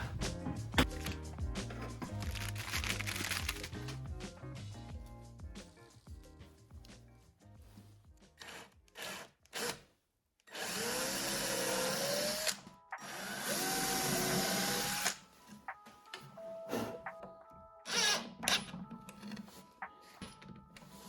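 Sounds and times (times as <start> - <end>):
power drill motor whine: 10.6 - 15.1.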